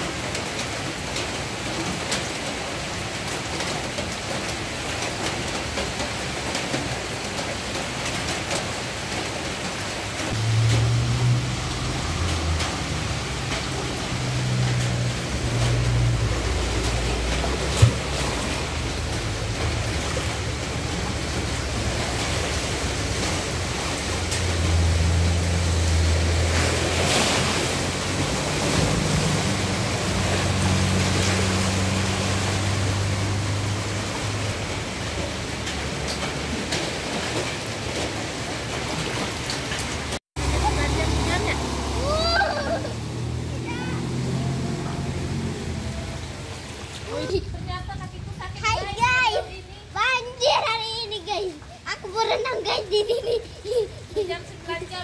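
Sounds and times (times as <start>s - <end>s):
heavy rain pouring: 0.0s - 55.0s
low rumbling: 10.3s - 35.0s.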